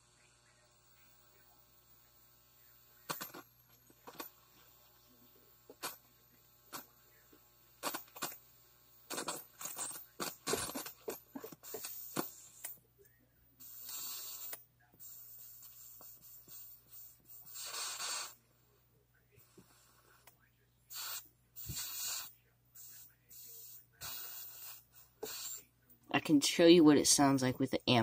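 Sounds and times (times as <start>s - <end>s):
steady low hum: 0.0s - 28.0s
electrical hiss: 0.9s - 12.8s, 13.6s - 18.4s, 20.9s - 25.7s.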